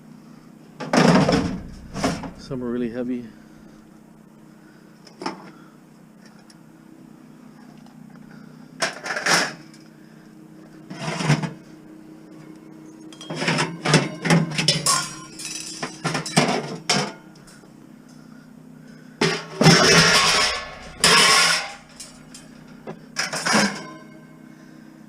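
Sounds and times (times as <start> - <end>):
scrap metal clanking: 1.0 - 2.7, 19.2 - 24.0
metal clattering and scraping: 1.0 - 3.9, 14.6 - 17.6, 19.2 - 23.9
low hum: 1.1 - 8.7, 17.3 - 23.2.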